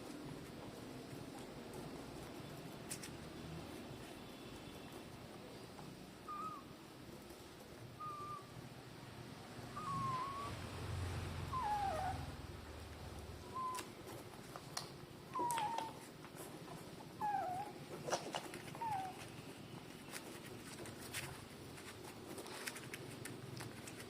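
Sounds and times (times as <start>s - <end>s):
puppies squeaking: 6.2s - 6.7s, 8.0s - 8.5s, 9.7s - 10.6s, 11.5s - 12.3s, 13.4s - 14.0s, 15.3s - 16.0s, 17.1s - 19.4s.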